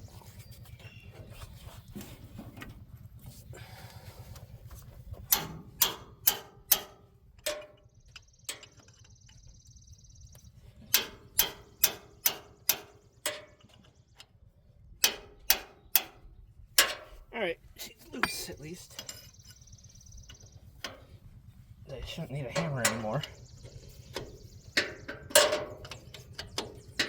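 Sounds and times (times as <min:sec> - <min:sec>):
hammer striking metal wrench: 0:05.3 - 0:07.7.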